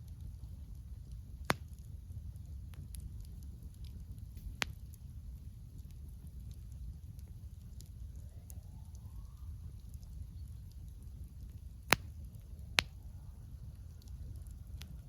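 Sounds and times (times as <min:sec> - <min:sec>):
campfire crackling: 0:00.0 - 0:15.0
faint rising whistle: 0:07.8 - 0:11.7, 0:12.4 - 0:15.0.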